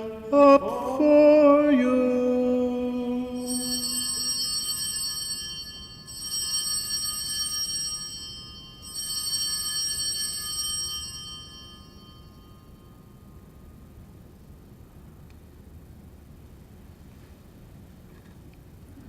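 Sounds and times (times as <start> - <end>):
altar bells ringing: 3.3 - 13.8.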